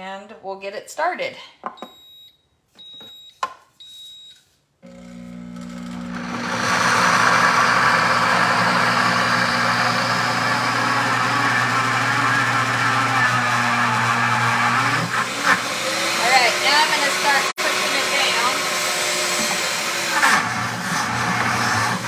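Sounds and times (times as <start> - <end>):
blender control panel beeping: 4.8 - 22.0
blender motor whirring: 4.8 - 22.0.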